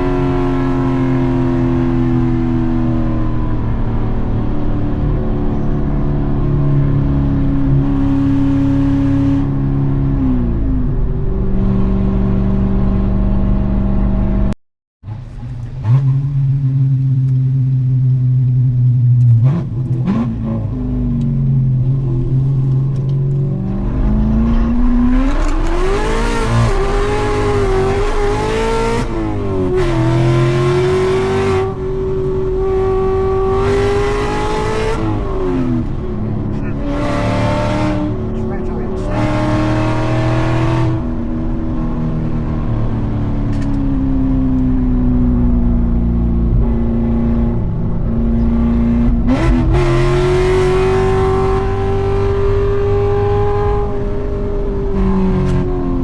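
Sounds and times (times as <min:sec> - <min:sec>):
car engine revving: 0:15.2 - 0:56.0.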